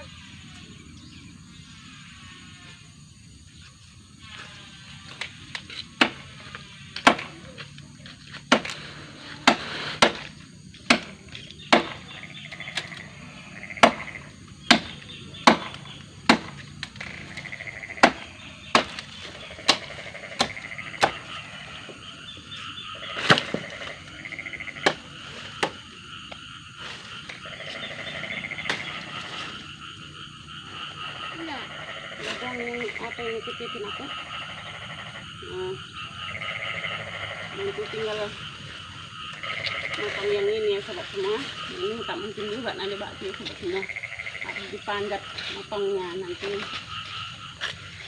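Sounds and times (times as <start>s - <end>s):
blade chopping wood: 7.0s - 7.4s, 9.4s - 12.0s, 14.7s - 17.0s, 18.0s - 21.2s.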